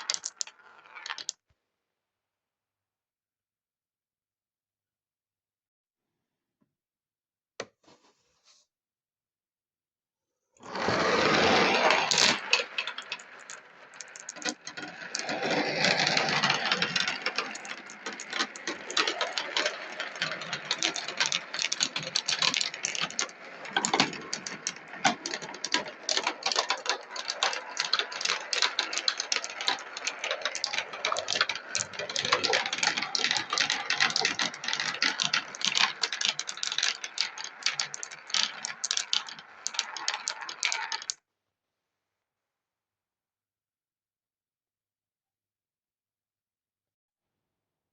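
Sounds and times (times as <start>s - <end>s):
marbles clattering down marble run: 0.0s - 1.4s, 10.7s - 41.2s.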